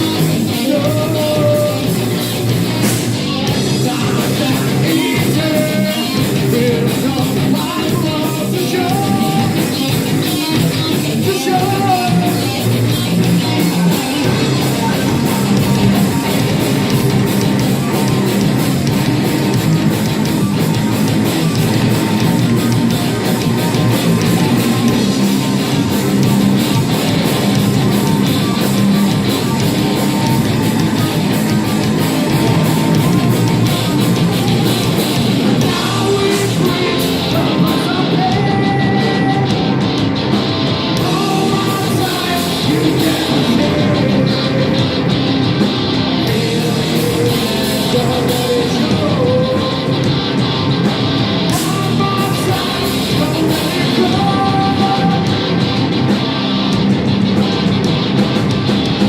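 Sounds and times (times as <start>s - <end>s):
heavy metal band playing: 0.0s - 59.0s.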